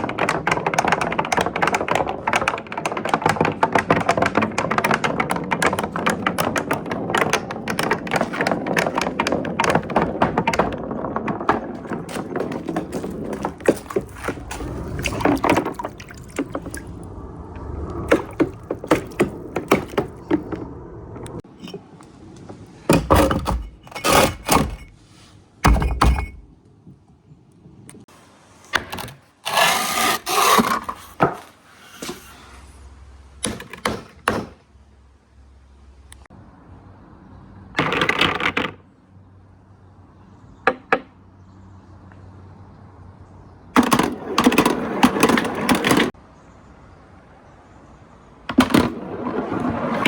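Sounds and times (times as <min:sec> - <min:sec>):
marbles rolling on marble run: 0:00.0 - 0:20.6.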